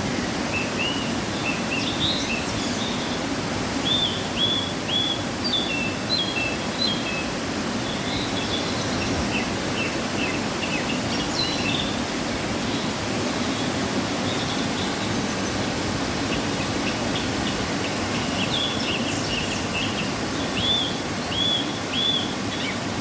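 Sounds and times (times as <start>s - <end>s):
waterfall rushing: 0.0s - 23.0s
birds chirping: 13.6s - 22.9s.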